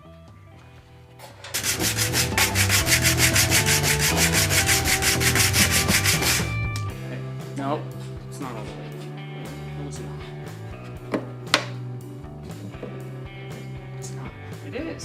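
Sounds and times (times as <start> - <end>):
sanding acrylic by hand: 1.5 - 6.6.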